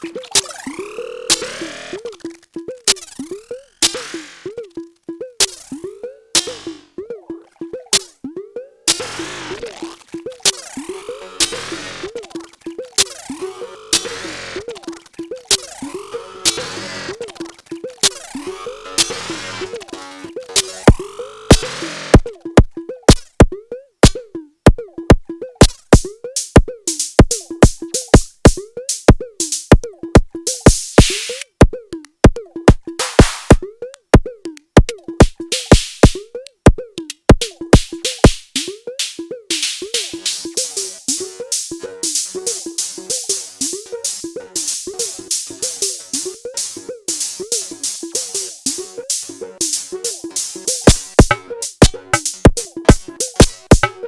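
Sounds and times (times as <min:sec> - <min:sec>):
pitch-bending electronic percussion: 0:00.0 - 0:19.8
electronic percussion pattern: 0:00.0 - 0:54.0.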